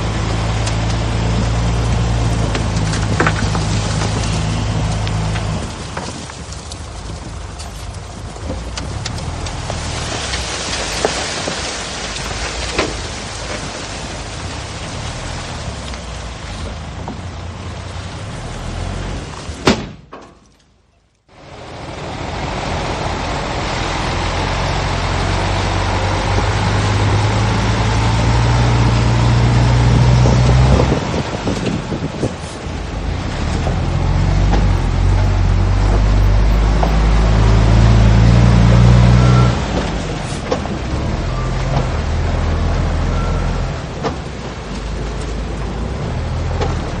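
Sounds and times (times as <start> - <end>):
heavy diesel engine running: 0.0 - 11.1.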